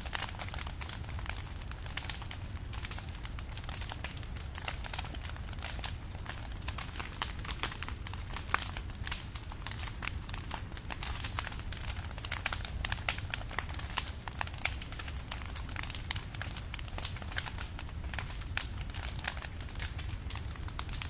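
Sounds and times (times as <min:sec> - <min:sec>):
firewood crackling and popping: 0:00.0 - 0:21.0
low steady fire rumble: 0:00.0 - 0:21.0.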